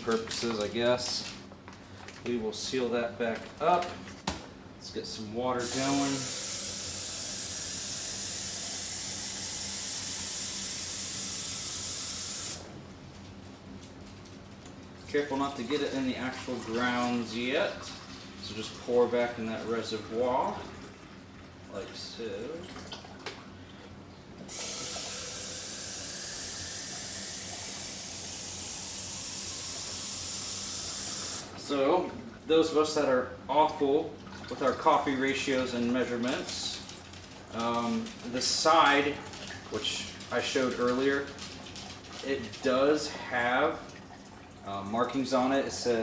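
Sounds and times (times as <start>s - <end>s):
tap water running: 5.5s - 12.7s, 24.4s - 32.3s, 34.1s - 45.5s.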